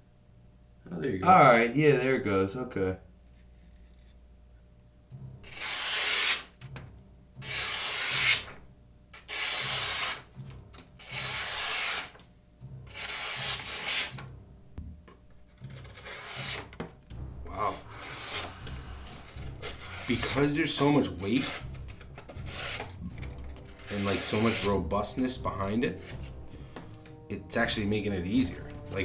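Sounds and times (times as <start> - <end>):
knife blade slicing: 7.4 - 8.5, 9.2 - 10.3, 11.0 - 12.2, 12.9 - 14.2, 15.6 - 16.7.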